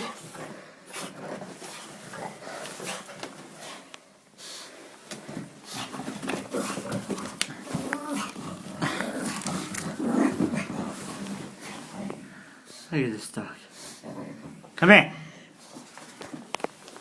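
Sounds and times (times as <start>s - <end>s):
dog growling: 5.8s - 12.4s, 13.8s - 14.8s.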